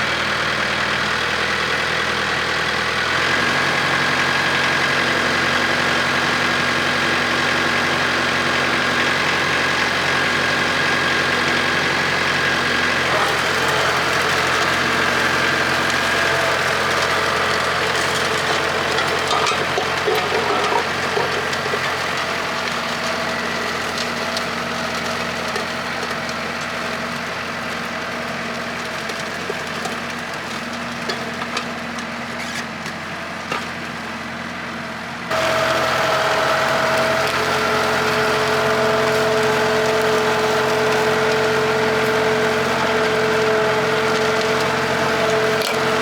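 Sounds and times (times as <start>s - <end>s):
tractor diesel engine running: 0.0s - 46.0s.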